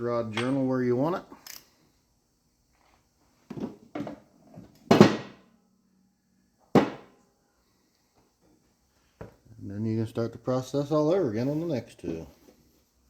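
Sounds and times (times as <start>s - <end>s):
tools clunking on engine block: 0.3s - 0.7s.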